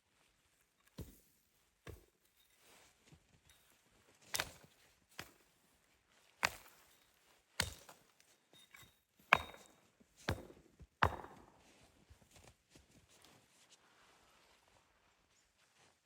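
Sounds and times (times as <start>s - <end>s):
axe chopping wood: 4.3s - 5.3s, 6.4s - 6.8s, 7.6s - 8.0s, 9.2s - 11.5s.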